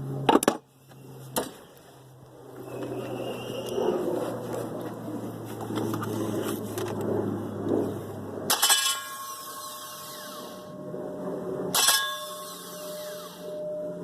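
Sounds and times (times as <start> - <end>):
steady low hum: 0.0 - 14.0
ringing metallic clangs: 8.5 - 10.0, 11.7 - 14.0.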